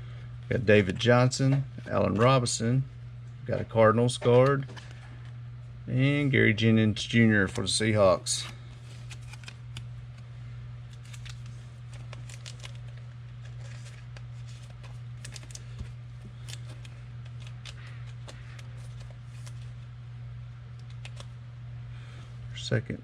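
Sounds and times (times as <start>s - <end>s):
steady low hum: 0.0s - 23.0s
cards flipped through by hand: 8.3s - 19.8s, 20.7s - 21.4s.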